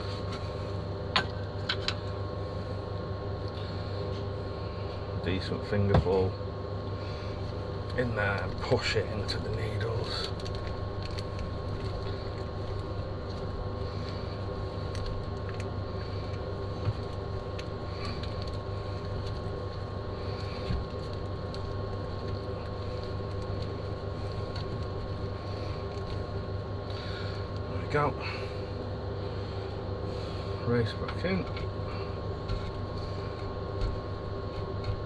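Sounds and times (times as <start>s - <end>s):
steady mechanical hum: 0.0s - 35.0s.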